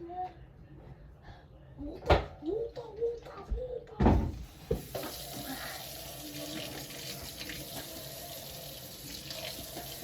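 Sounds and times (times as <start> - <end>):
tap water running into sink: 4.4 - 10.0.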